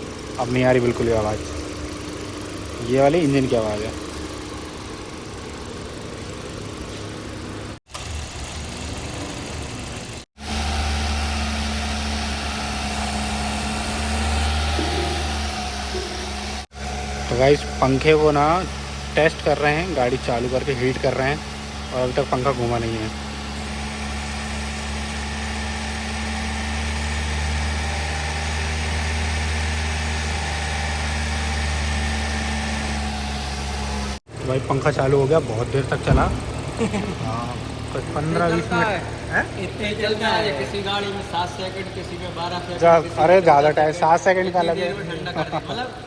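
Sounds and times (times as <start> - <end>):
car engine idling: 0.0 - 46.0.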